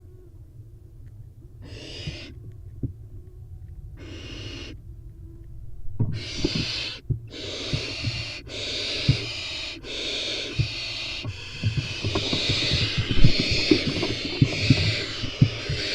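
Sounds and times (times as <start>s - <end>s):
owl chicks hissing screeches: 1.6s - 2.3s, 4.0s - 4.8s, 6.1s - 15.9s
knocks in wooden nest box: 10.5s - 15.9s.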